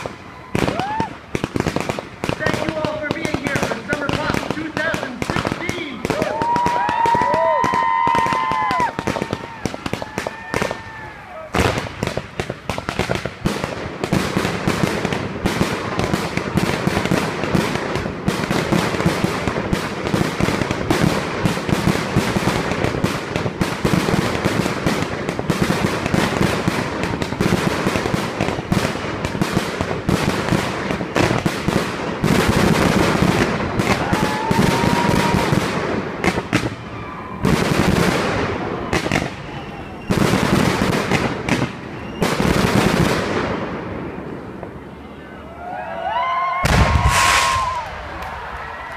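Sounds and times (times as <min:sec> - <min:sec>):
rising firework whistle: 0:00.0 - 0:01.4, 0:06.0 - 0:11.9, 0:33.8 - 0:35.8, 0:36.4 - 0:40.6, 0:41.6 - 0:42.7, 0:44.8 - 0:48.9
fireworks bangs and crackles: 0:00.0 - 0:48.9.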